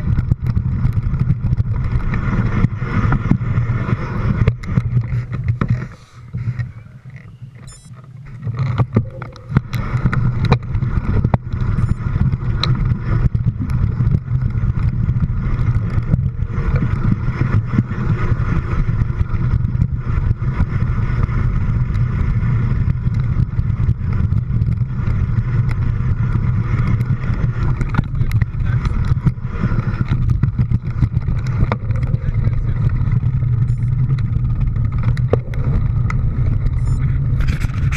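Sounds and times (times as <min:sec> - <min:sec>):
vehicle rumbling in motion: 0:00.0 - 0:37.9
clicks and rattles: 0:04.4 - 0:17.1, 0:26.7 - 0:37.9.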